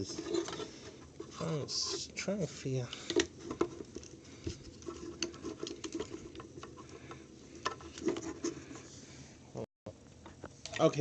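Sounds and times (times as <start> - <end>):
plastic parts clicking and scraping: 0.0 - 2.0, 2.9 - 8.8.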